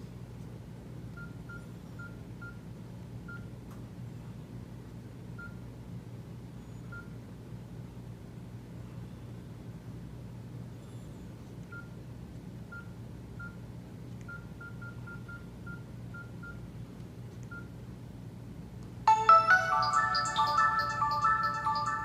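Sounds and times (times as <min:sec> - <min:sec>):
phone keypad beeps: 0:19.1 - 0:22.0
polyphonic ringtone melody: 0:19.1 - 0:22.0.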